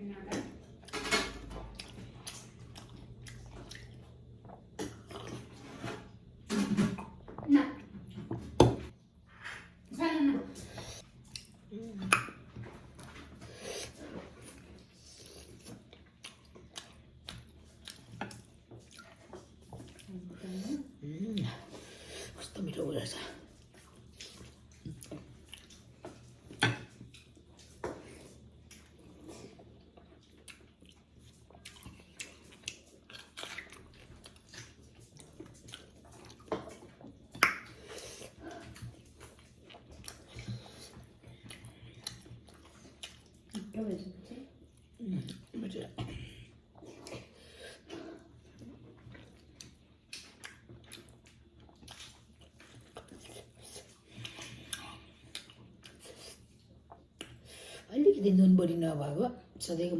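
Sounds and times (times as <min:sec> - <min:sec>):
person chewing food: 0:01.5 - 0:05.5, 0:10.7 - 0:20.2, 0:23.6 - 0:43.8, 0:44.6 - 0:57.6.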